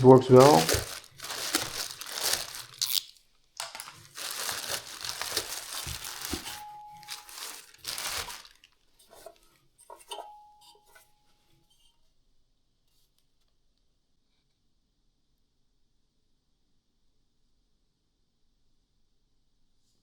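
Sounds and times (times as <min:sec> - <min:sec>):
wrapping crinkling and rustling: 0:00.0 - 0:09.4.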